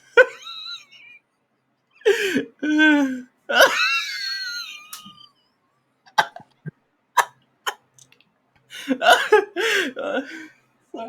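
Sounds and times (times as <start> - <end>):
person wheezing laugh: 6.1 - 7.3.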